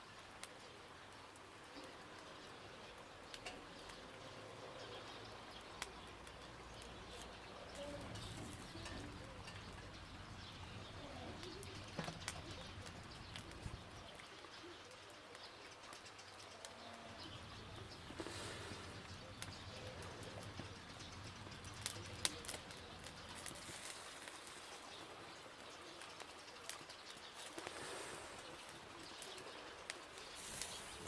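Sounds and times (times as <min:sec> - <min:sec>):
fire crackling: 0:00.0 - 0:31.0
sharp pops from fire: 0:05.6 - 0:10.2, 0:11.4 - 0:14.2, 0:17.8 - 0:31.0.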